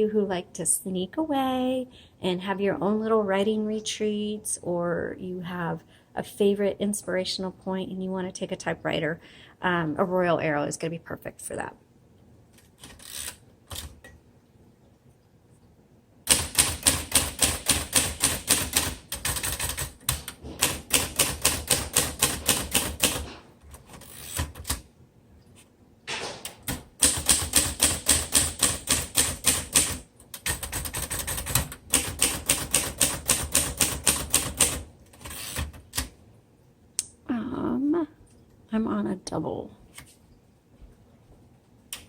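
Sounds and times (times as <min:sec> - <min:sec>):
typewriter typing: 0:12.7 - 0:14.0, 0:16.3 - 0:24.8, 0:26.4 - 0:36.1.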